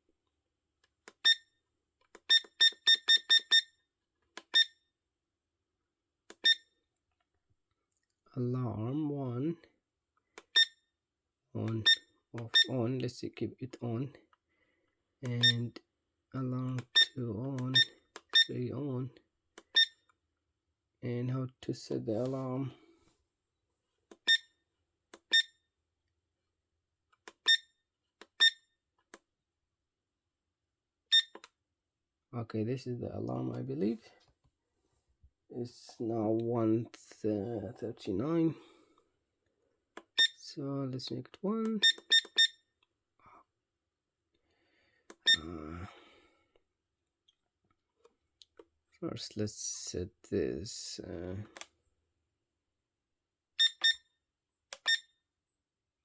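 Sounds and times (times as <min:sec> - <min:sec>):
alarm clock beeping: 0:02.3 - 0:03.8, 0:04.5 - 0:04.8, 0:06.4 - 0:06.7, 0:11.8 - 0:12.8, 0:16.9 - 0:18.6, 0:19.7 - 0:20.0, 0:27.5 - 0:27.7, 0:31.1 - 0:31.4, 0:41.8 - 0:42.6, 0:45.3 - 0:45.5, 0:53.6 - 0:54.1, 0:54.8 - 0:55.1.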